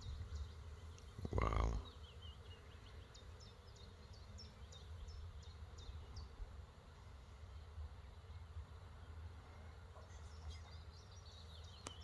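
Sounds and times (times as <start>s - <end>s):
faint low outdoor rumble: 0.0s - 12.0s
small bird chirping: 10.0s - 12.0s.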